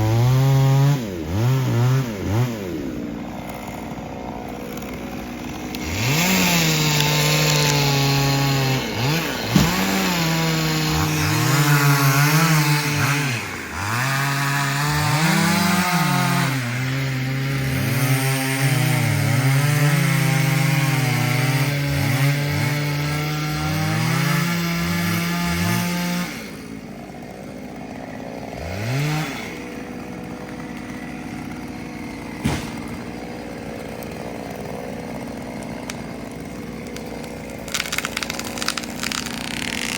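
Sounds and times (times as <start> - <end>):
chainsaw cutting into tree: 0.0 - 39.9
sharp knock: 32.4 - 32.9.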